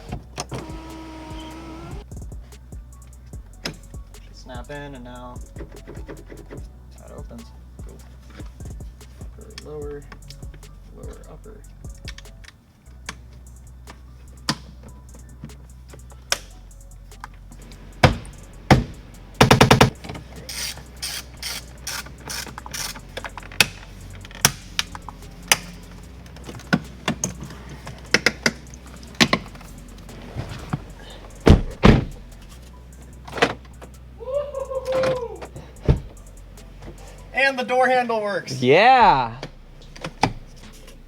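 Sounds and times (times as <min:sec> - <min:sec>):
background music: 0:00.0 - 0:41.0
car door latch clicks and clunks: 0:18.0 - 0:20.2, 0:31.3 - 0:32.3, 0:33.2 - 0:33.9, 0:35.0 - 0:36.2, 0:39.4 - 0:40.5.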